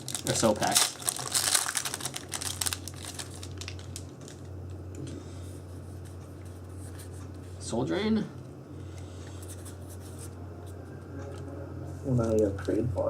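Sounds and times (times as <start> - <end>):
cards and foil wrappers crinkling: 0.0 - 5.1
steady low hum: 0.0 - 13.0.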